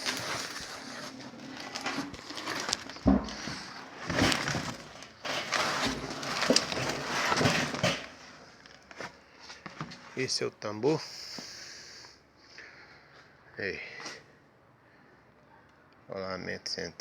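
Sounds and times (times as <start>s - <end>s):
metal parts scraping and clattering: 0.0s - 8.2s.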